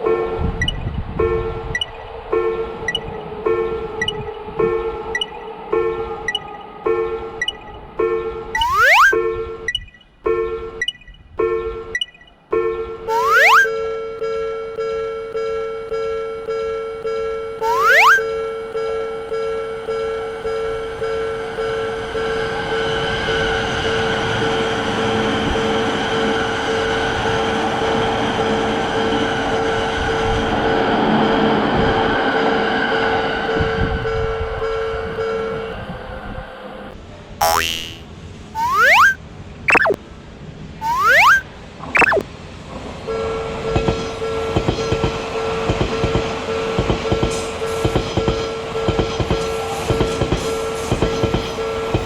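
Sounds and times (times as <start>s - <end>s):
train wheels clacking over rail joints: 43.7s - 52.0s.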